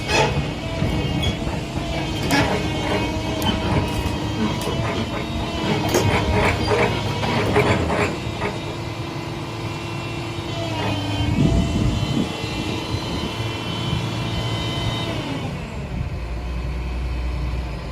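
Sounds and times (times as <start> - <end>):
excavator engine humming with whine: 0.0 - 17.9.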